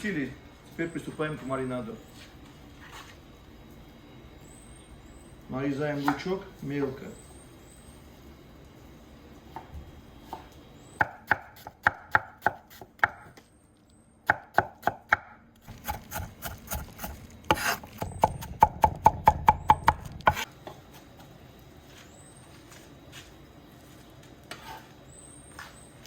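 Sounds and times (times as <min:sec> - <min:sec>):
knife chopping on cutting board: 0:14.3 - 0:20.4.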